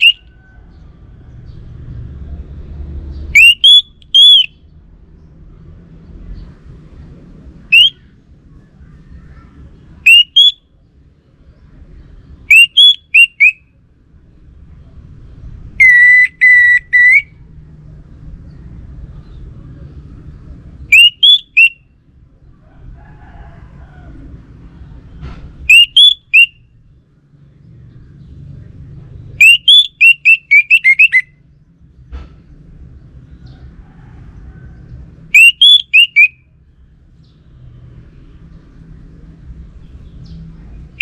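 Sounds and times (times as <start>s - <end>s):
thrush whistling song: 0.0s - 0.3s, 3.2s - 4.7s, 7.6s - 8.1s, 9.9s - 10.8s, 12.4s - 13.8s, 15.7s - 17.5s, 20.8s - 22.0s, 25.6s - 26.8s, 29.3s - 31.5s, 35.3s - 36.6s.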